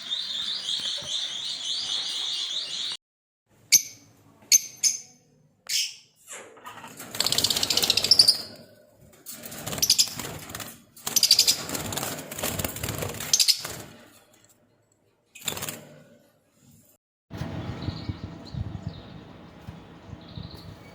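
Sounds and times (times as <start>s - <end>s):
parrots flapping wings: 6.7s - 8.4s, 9.3s - 14.5s, 15.4s - 16.1s.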